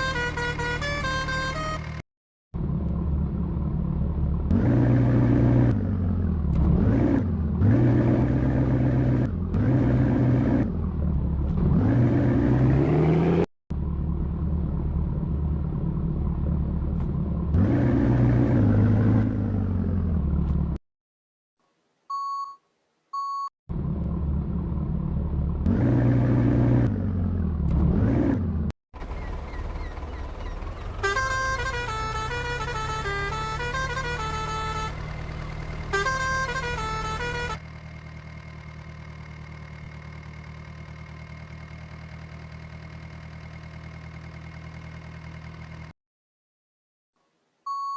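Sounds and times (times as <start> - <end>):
heavy vehicle engine revving: 2.6 - 20.8, 23.7 - 45.5
short beeps: 22.1 - 22.6, 23.2 - 23.5, 47.7 - 47.9
multi-note horn: 31.0 - 35.1, 35.9 - 37.6.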